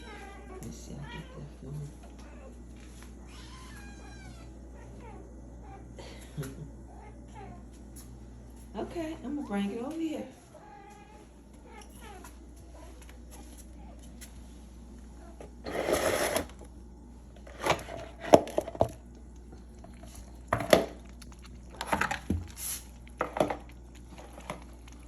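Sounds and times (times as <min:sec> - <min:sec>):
rattling scrape: 0:15.7 - 0:16.5
objects knocking and clattering: 0:20.5 - 0:21.0.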